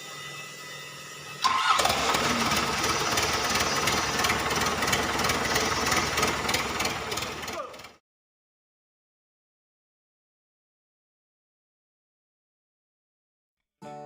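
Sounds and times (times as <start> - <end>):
diesel engine cranking and running: 1.4 - 8.0.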